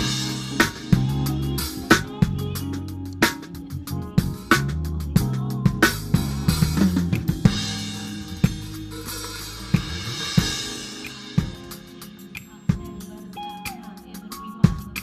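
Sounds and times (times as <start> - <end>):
low held bass notes: 0.0 - 11.7.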